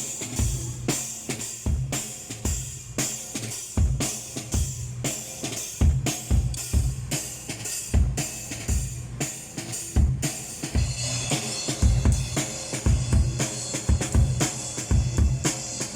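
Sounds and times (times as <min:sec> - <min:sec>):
cymbals washing: 0:00.0 - 0:15.9.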